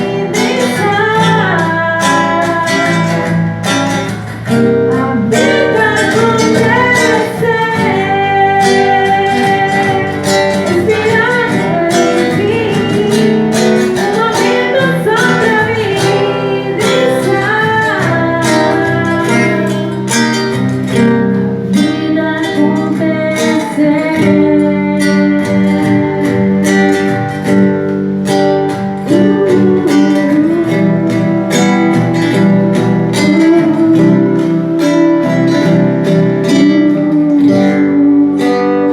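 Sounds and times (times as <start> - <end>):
person singing: 0.0 - 28.0, 28.6 - 38.9
strummed acoustic guitar: 0.0 - 38.9.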